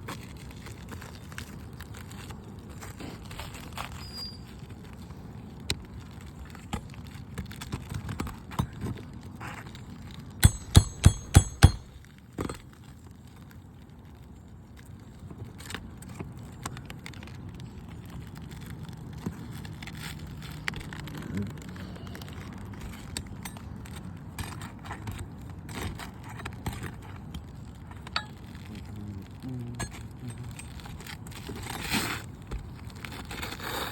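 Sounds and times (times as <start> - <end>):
hammer blows on metal: 10.4 - 11.9
tools scraping shingles: 10.4 - 12.6, 29.8 - 33.9.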